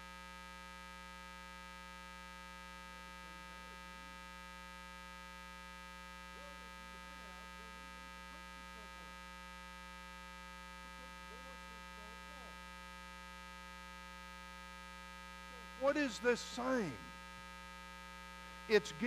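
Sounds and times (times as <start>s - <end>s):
electrical hum and buzz: 4.6s - 19.0s
faint distant voice speaking: 10.5s - 12.8s, 15.4s - 17.1s.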